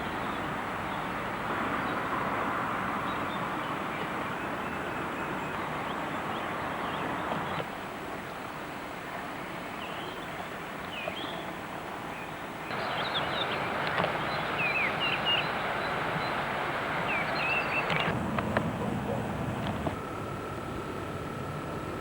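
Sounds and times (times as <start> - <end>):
small birds chirping: 2.8 - 20.0
steady rushing background: 12.7 - 22.0.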